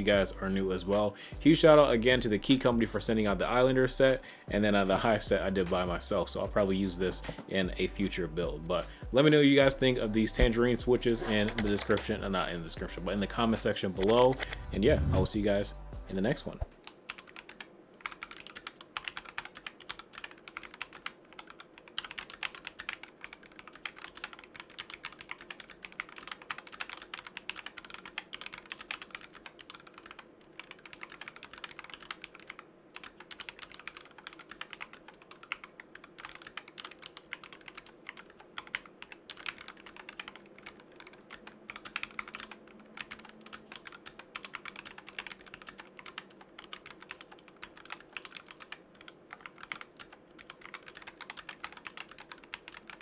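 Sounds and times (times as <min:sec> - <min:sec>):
mechanical keyboard typing: 0:09.6 - 0:15.5, 0:16.5 - 0:53.0.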